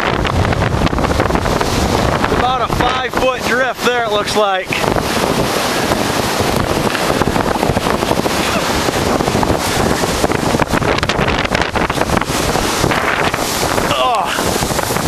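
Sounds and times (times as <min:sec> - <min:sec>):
blizzard wind rushing: 0:00.0 - 0:15.0
wind buffeting microphone: 0:00.0 - 0:15.0.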